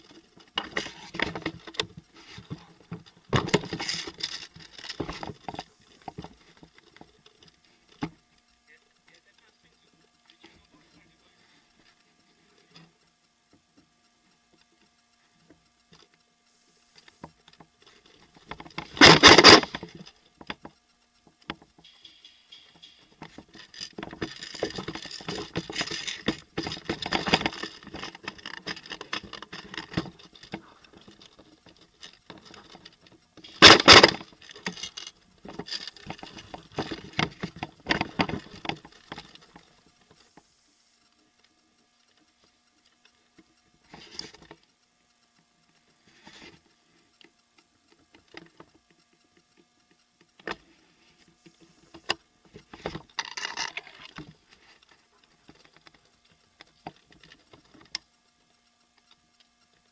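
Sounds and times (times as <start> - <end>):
softer rapid crackling: 0.0 - 59.9.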